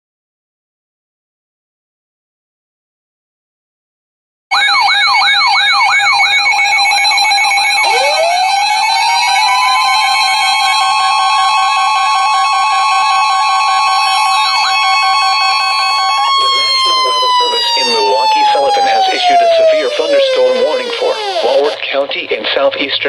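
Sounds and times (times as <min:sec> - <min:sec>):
siren sweeping up and down: 0:04.5 - 0:21.8
siren winding up: 0:04.5 - 0:21.8
steady alarm tones: 0:04.5 - 0:21.9.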